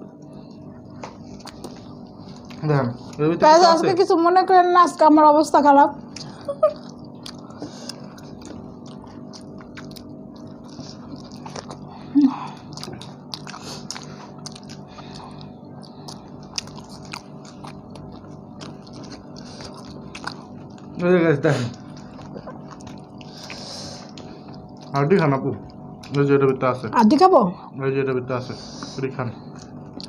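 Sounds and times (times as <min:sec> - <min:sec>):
steady low hum: 0:00.0 - 0:30.0
chewing and biting food: 0:00.2 - 0:03.2, 0:06.0 - 0:21.1, 0:21.7 - 0:26.6, 0:29.4 - 0:30.0.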